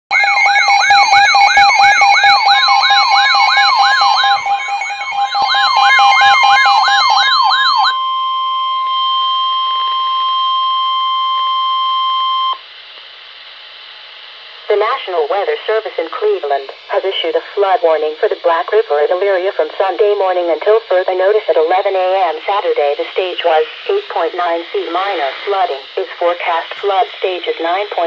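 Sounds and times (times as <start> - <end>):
rising siren sweeps: 0.1 - 9.8
steady warning alarm tone: 0.1 - 12.6, 14.6 - 28.0
wavering siren wail: 0.1 - 12.6
faint radio static: 14.6 - 28.0.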